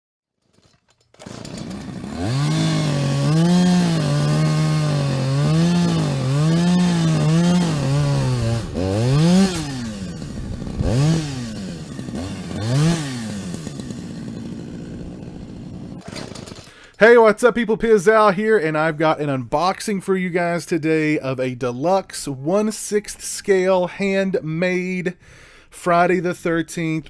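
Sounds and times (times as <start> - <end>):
small engine revving: 1.2 - 16.6.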